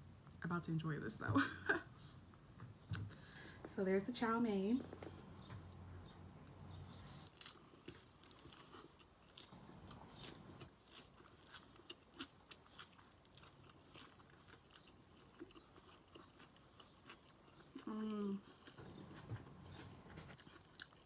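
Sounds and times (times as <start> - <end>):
person chewing noodles: 6.9 - 21.0.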